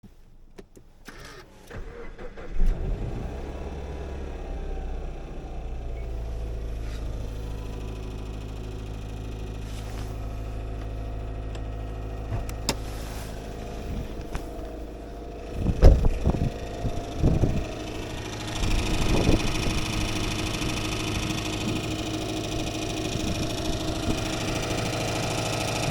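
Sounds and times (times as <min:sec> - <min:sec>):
car engine idling: 0:01.1 - 0:25.9
loud engine knocks: 0:15.5 - 0:17.8.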